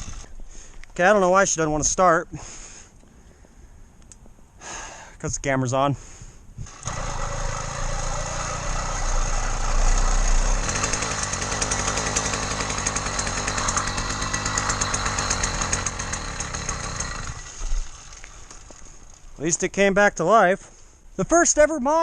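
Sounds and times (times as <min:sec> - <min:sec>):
two-stroke engine revving and idling: 0:00.0 - 0:00.3, 0:06.6 - 0:18.8
engine rattle: 0:06.6 - 0:19.3.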